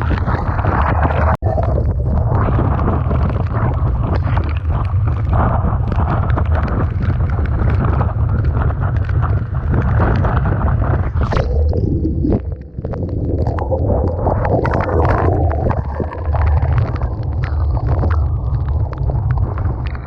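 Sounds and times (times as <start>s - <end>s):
rough sea rushing: 0.0s - 20.0s
small crackles: 0.0s - 20.0s
strong wind buffeting microphone: 0.0s - 20.0s.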